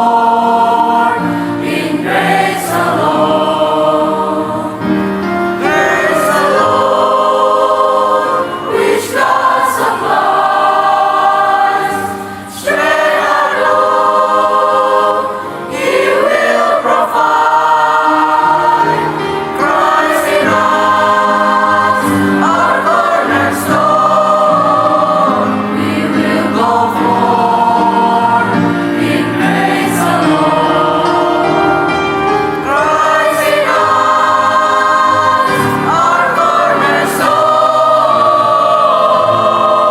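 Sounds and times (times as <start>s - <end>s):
choir singing: 0.0s - 39.9s.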